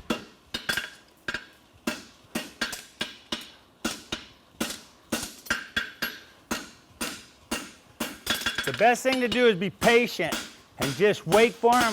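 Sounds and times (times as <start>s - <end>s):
hammer striking steel on anvil: 0.0s - 11.9s.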